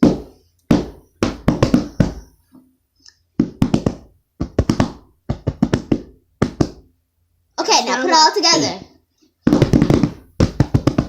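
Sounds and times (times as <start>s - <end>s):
drum taps and knocks: 0.0s - 2.3s, 3.4s - 6.9s, 9.4s - 11.0s.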